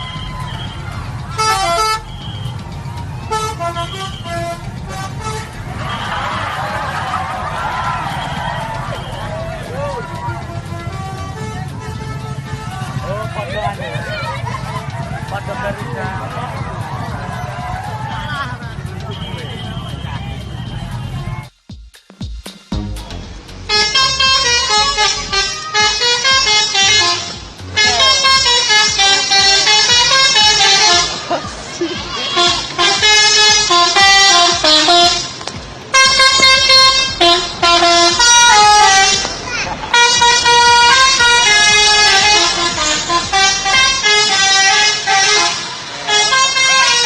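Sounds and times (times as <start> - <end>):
bus horns playing a melody: 0.0 - 15.8, 16.5 - 21.5, 23.6 - 47.0.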